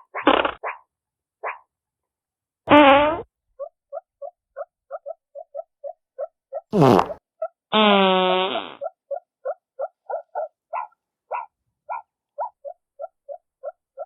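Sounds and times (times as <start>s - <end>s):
synthetic fart sounds: 0.2s - 0.6s, 2.7s - 3.3s, 6.7s - 8.8s.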